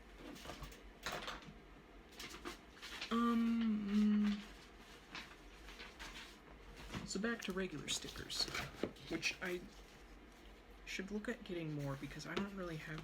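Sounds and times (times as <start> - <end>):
paper rustling and tapping: 2.2 - 9.6, 12.1 - 13.0
person humming: 3.1 - 4.5.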